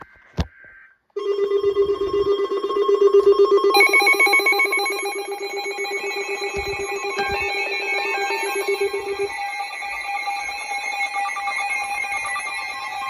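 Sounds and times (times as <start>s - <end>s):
rapidly pulsing alarm tone: 0.8s - 13.0s
higher stepping alarm tone: 1.2s - 13.0s.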